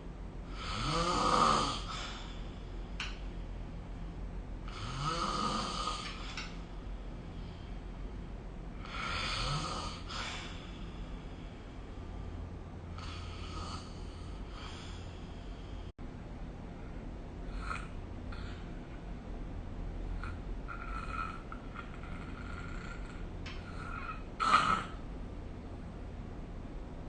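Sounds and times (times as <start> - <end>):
person snoring: 0.5 - 2.4, 4.7 - 6.4, 8.8 - 10.8, 13.0 - 15.2, 17.5 - 18.6, 20.2 - 25.0.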